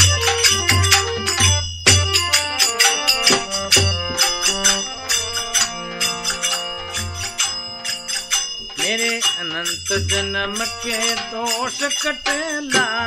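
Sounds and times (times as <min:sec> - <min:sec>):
melody: 0:00.0 - 0:09.0
small hand percussion: 0:00.0 - 0:13.0
steady drum beat: 0:00.0 - 0:13.0.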